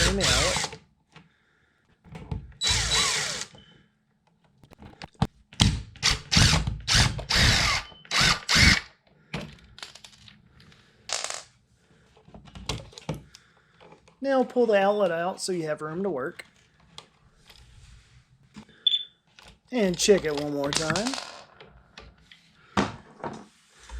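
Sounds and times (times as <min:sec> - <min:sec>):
cordless drill running: 0:00.0 - 0:00.8, 0:02.6 - 0:03.6, 0:06.1 - 0:08.9.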